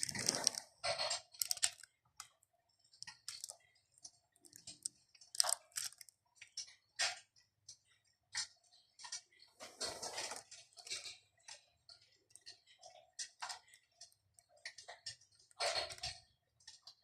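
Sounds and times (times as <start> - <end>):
electric fireplace crackling effect: 0.0 - 8.6.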